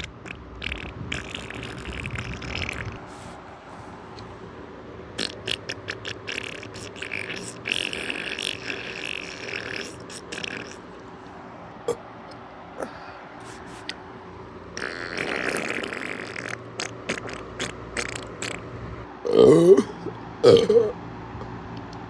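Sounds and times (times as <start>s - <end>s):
person burping: 11.8s - 12.0s, 19.2s - 21.0s.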